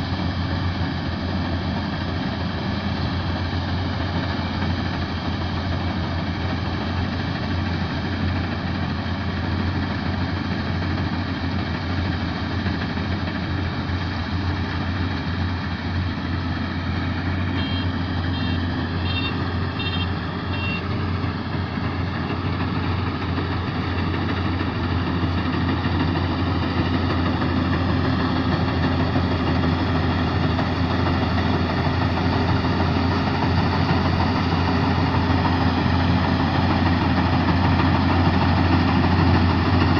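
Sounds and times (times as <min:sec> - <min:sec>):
combine harvester engine running: 0:00.0 - 0:39.9.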